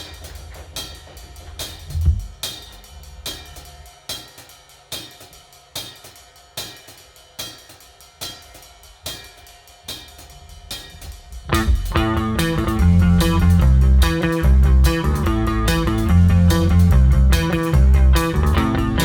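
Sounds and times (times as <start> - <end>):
drum kit beat: 0.0 - 19.0
bass and guitar: 11.5 - 19.0.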